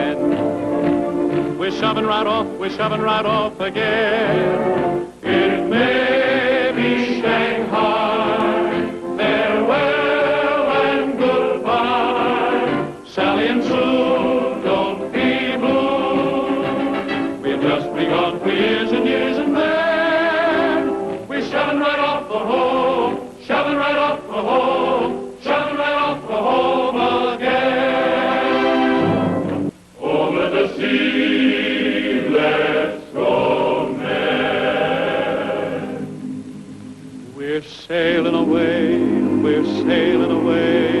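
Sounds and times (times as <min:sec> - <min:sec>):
choir singing: 0:00.0 - 0:41.0.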